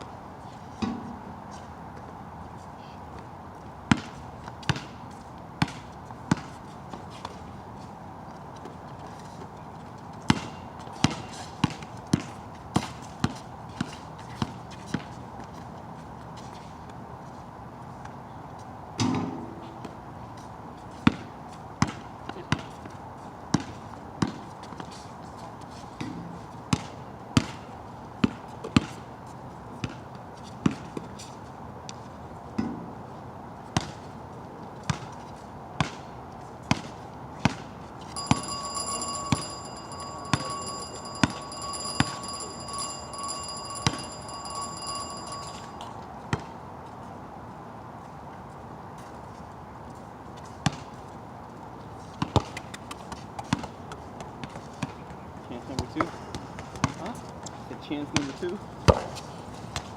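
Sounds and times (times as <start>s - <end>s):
high steady tone: 38.2s - 46.0s.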